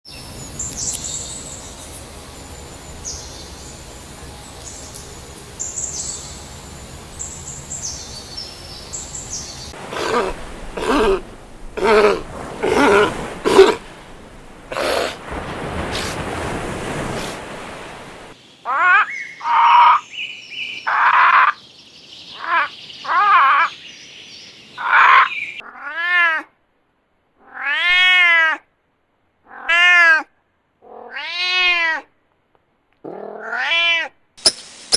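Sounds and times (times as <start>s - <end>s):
high thin chirping: 0.1s - 9.8s, 34.4s - 34.9s
cat meowing: 24.8s - 26.5s, 27.4s - 28.6s, 29.5s - 32.1s, 33.1s - 34.2s.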